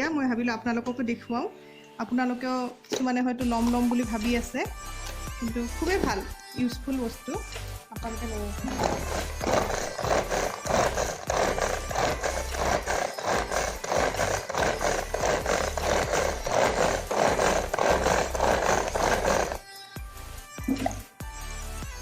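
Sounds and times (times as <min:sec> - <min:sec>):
vegetable chopper blades rattling: 0:08.6 - 0:19.6.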